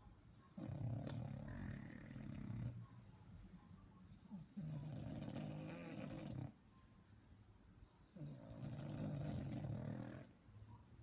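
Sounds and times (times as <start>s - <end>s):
puppy snoring: 0.6s - 2.8s, 4.3s - 6.6s, 8.1s - 10.4s.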